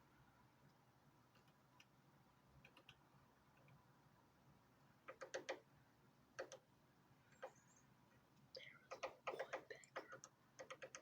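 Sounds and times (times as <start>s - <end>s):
woodpecker pecking on wood: 5.0s - 5.7s, 6.3s - 6.7s, 8.9s - 11.0s.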